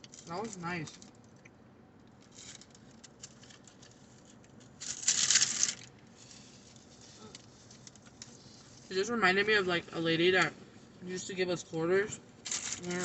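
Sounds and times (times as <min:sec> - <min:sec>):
crackly packaging rustle: 0:00.0 - 0:09.0, 0:12.4 - 0:13.0.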